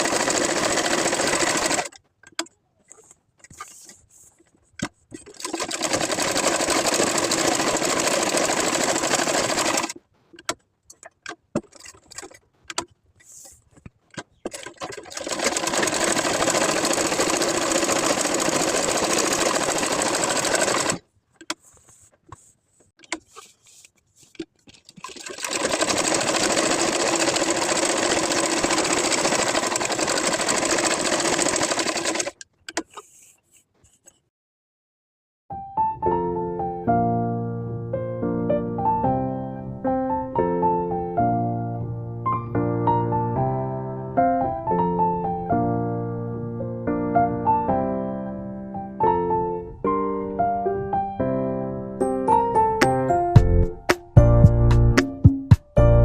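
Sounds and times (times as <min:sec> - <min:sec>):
sewing machine stitching: 0:00.0 - 0:02.0, 0:05.1 - 0:10.0, 0:14.4 - 0:21.0, 0:25.0 - 0:33.1
small clicks and handling noises: 0:32.3 - 0:34.2.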